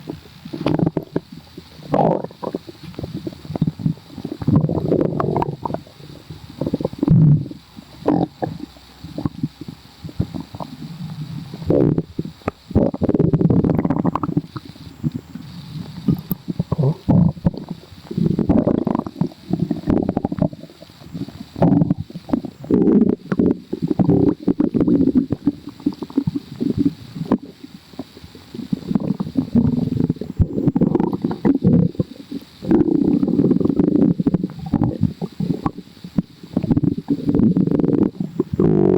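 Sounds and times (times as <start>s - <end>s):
stomach growling and gurgling: 0.0s - 38.9s.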